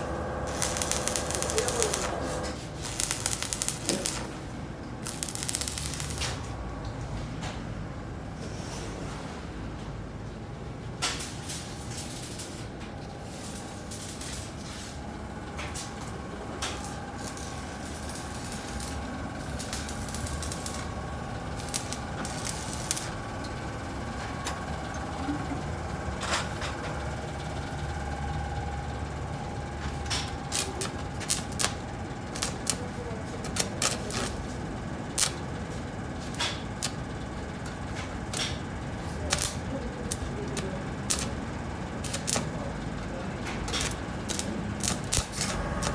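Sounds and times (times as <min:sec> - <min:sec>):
steady hum: 0:00.0 - 0:06.5, 0:11.9 - 0:45.9
arc welding crackling and popping: 0:00.0 - 0:06.6, 0:11.0 - 0:45.9.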